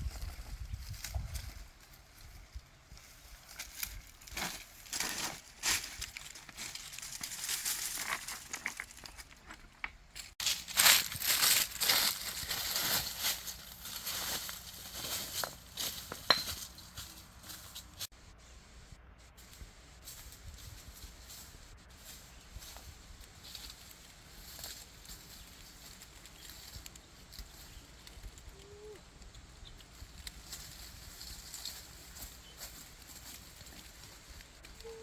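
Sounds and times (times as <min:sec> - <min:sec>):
crinkling and tearing: 0:10.2 - 0:15.0.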